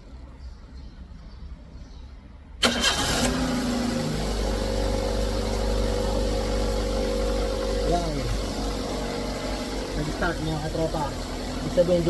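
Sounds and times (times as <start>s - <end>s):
car engine starter cranking: 2.6s - 4.2s
car engine idling: 2.6s - 12.0s.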